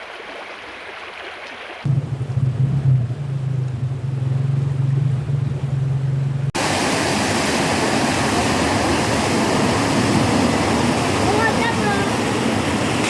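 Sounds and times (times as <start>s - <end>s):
running water rushing: 0.0s - 2.4s, 5.6s - 13.0s
low hum: 1.9s - 6.6s.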